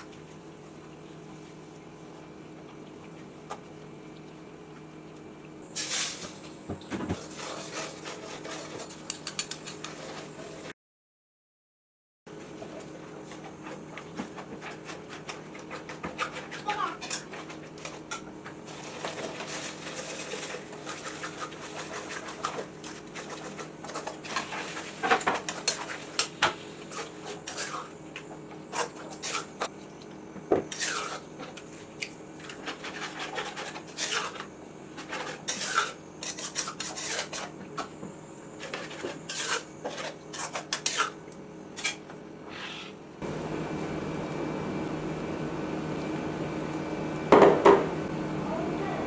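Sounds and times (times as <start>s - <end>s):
utensils clinking against dishes: 8.8s - 10.0s.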